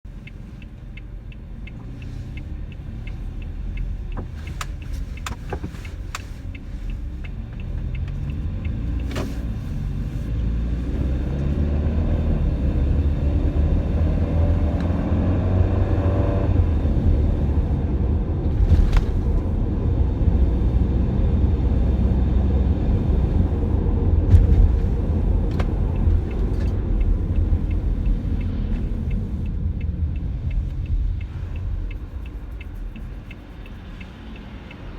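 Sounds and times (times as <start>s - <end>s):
van engine and road rumble: 0.0s - 34.9s
faint regular ticking: 0.1s - 10.4s, 24.6s - 34.9s.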